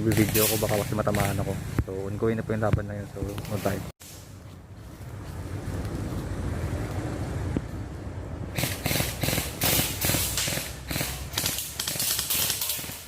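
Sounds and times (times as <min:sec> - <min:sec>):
brush and dry leaves crunching: 0:02.8 - 0:08.0.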